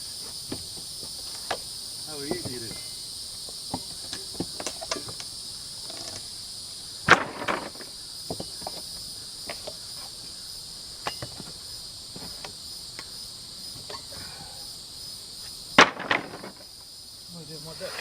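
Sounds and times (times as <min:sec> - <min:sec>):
insects chirring: 0:00.0 - 0:18.0
board clattering: 0:00.2 - 0:06.4, 0:07.0 - 0:10.2, 0:11.0 - 0:13.1, 0:15.8 - 0:16.8
knocks on wooden pallet: 0:00.5 - 0:01.6, 0:02.3 - 0:02.9, 0:07.1 - 0:08.8, 0:15.8 - 0:16.7
wood cracking: 0:03.5 - 0:06.3, 0:07.0 - 0:08.8, 0:15.8 - 0:16.6.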